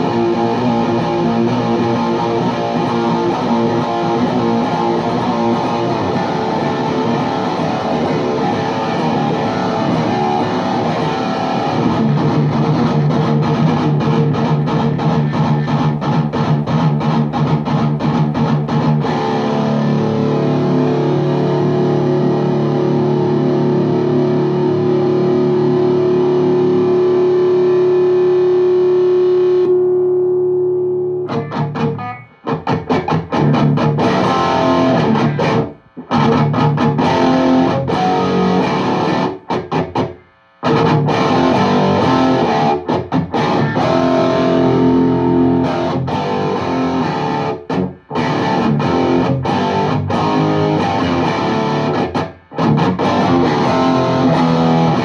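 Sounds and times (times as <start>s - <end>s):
distorted electric guitar: 0.0s - 55.0s.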